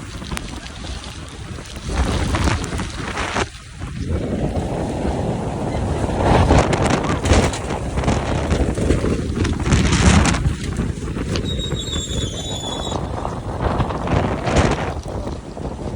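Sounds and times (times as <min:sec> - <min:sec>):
storm wind gusting over microphone: 0:00.0 - 0:15.9
thin high squeal: 0:11.4 - 0:13.2.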